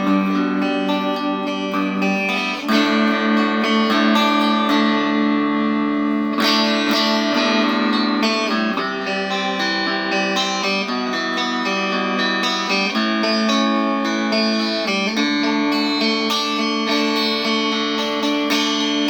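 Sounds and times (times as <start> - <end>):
electric guitar chords strummed: 0.0 - 19.0.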